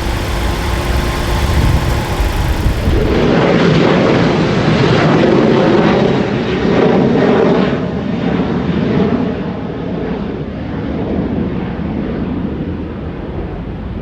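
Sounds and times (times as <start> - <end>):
large aircraft engines passing: 0.0 - 3.3.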